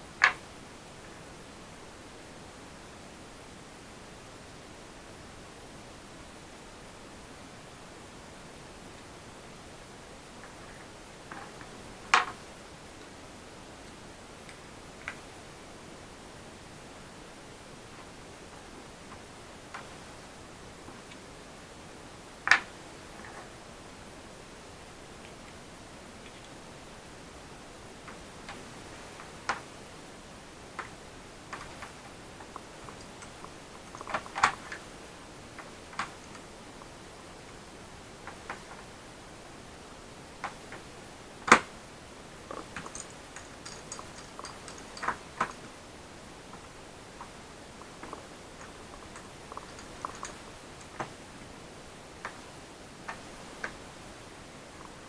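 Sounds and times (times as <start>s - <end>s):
steady hiss: 0.0s - 55.0s
small laptop parts clicking: 42.5s - 45.6s
small tools clicking on laptop parts: 42.5s - 45.7s, 47.2s - 51.1s.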